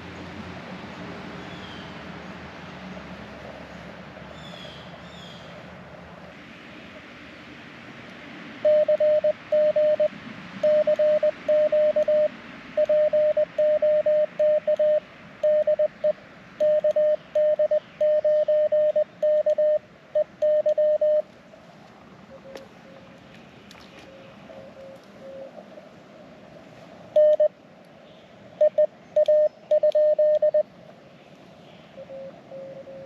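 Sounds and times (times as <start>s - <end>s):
morse code tone: 8.6s - 21.2s, 27.2s - 27.5s, 28.6s - 30.6s.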